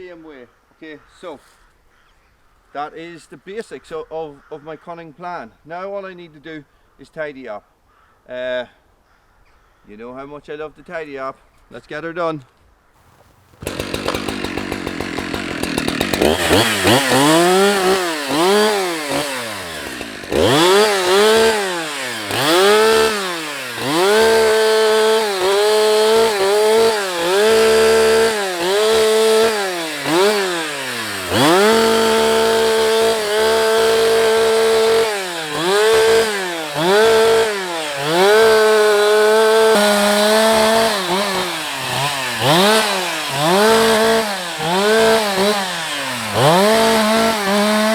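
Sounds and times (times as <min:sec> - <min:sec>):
chainsaw revving cutting wood: 0:13.0 - 0:47.9.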